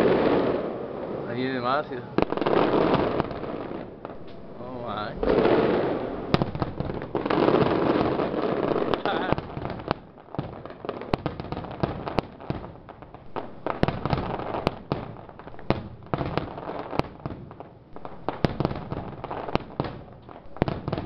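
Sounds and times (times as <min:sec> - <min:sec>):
fireworks bangs: 0:00.0 - 0:21.0
fireworks crackle: 0:00.0 - 0:21.0.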